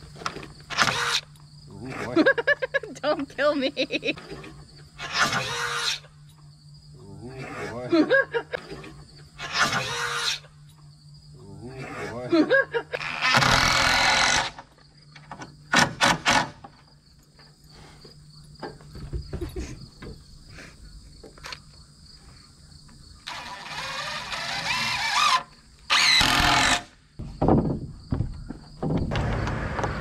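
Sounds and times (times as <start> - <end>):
cordless power tool bursts: 13.0 - 14.7, 23.2 - 26.9.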